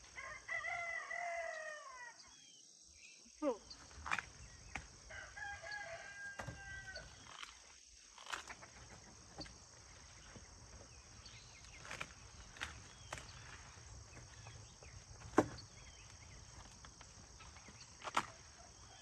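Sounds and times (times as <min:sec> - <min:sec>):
rooster crowing: 0:00.1 - 0:02.2, 0:05.0 - 0:07.2
sharp snaps and rustles: 0:03.9 - 0:04.9, 0:06.4 - 0:09.6, 0:11.6 - 0:14.6, 0:15.2 - 0:18.6.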